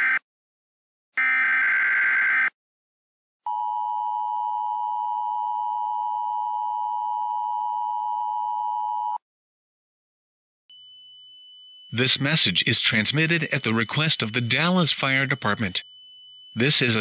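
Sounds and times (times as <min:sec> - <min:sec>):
harsh digital data screech: 0:11.9 - 0:15.8, 0:16.6 - 0:17.0.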